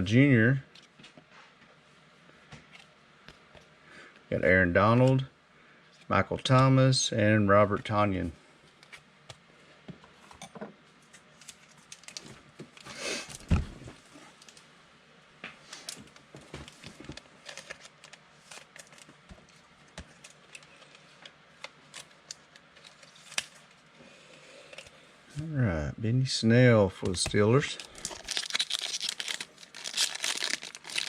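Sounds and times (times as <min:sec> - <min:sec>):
cards rustling and thumping: 0:27.0 - 0:31.0.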